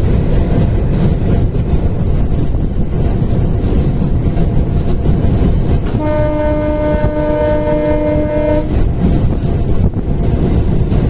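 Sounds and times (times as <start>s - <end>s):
train rumbling: 0.0s - 11.0s
train horn chord: 5.9s - 8.9s.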